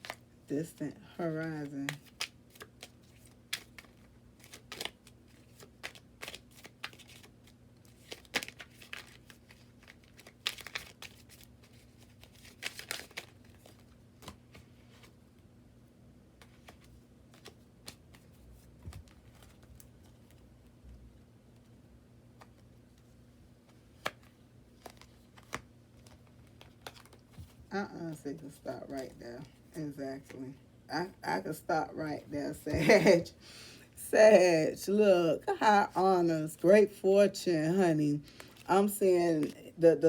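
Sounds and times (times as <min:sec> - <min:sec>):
low electrical hum: 0:00.0 - 0:40.0
cards clicking and rustling: 0:01.6 - 0:15.2, 0:16.4 - 0:20.5, 0:22.4 - 0:27.6, 0:38.3 - 0:38.7.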